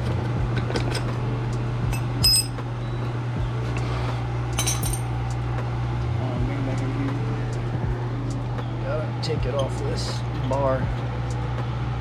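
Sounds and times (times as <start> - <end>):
steady low hum: 0.0 - 12.0
metal clicks and clinks: 4.6 - 5.1.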